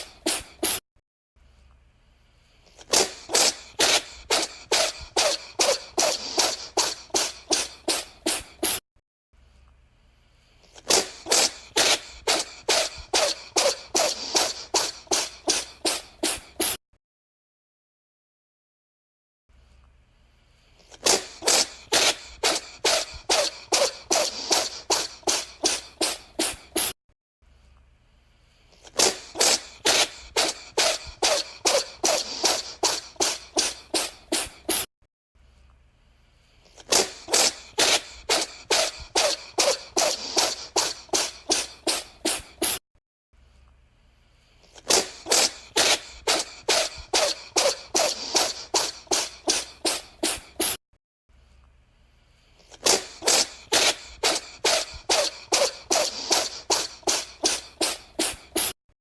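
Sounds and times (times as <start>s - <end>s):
cat sneezing: 0.0s - 0.8s, 2.7s - 8.8s, 10.7s - 16.8s, 20.8s - 27.0s, 28.8s - 34.9s, 36.7s - 42.8s, 44.7s - 50.8s, 52.6s - 58.8s.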